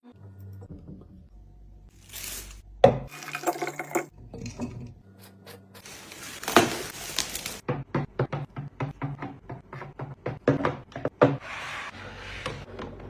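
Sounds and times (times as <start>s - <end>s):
liquid pouring: 2.0s - 4.5s
containers clinking and knocking: 2.9s - 4.9s.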